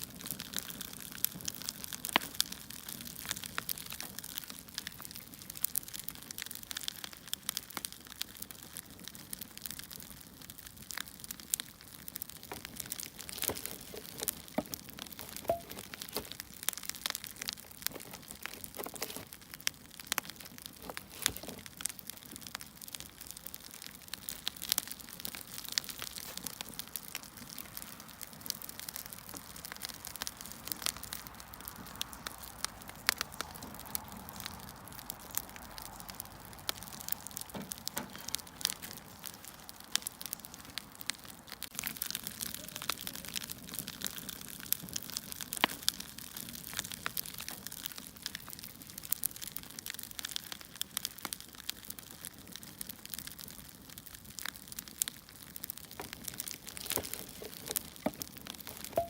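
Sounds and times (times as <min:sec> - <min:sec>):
fire crackling and popping: 0:00.0 - 0:59.0
soft hiss of fire: 0:00.0 - 0:59.0.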